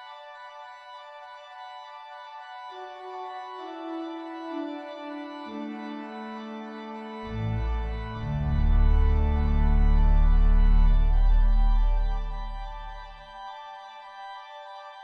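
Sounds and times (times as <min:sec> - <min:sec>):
organ playing chords: 0:02.6 - 0:13.8.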